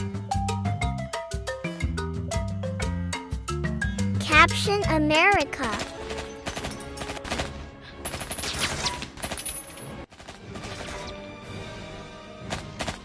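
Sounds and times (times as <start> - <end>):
music with held tones: 0.0 - 6.6
rapid gunfire sound effects: 10.1 - 11.1.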